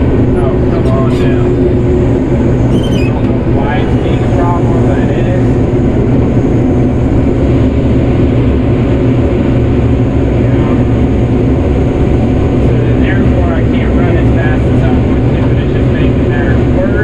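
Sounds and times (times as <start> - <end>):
combine harvester drone: 0.0 - 17.0.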